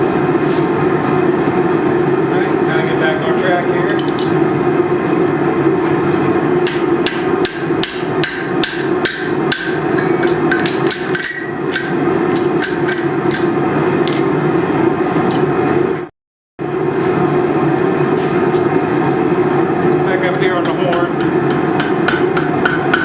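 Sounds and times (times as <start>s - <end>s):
steady hum: 0.0s - 23.0s
hammer striking steel on anvil: 6.6s - 14.3s, 20.6s - 23.0s.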